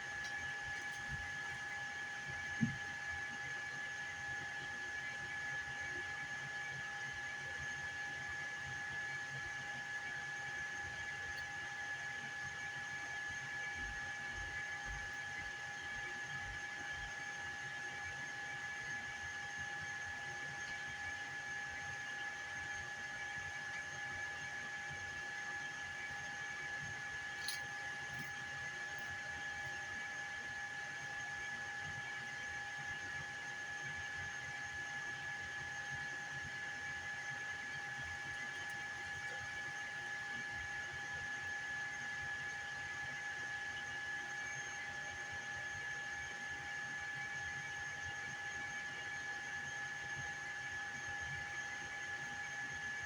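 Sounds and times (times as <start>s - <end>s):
cooling fans whirring: 0.0s - 4.6s, 10.6s - 42.0s.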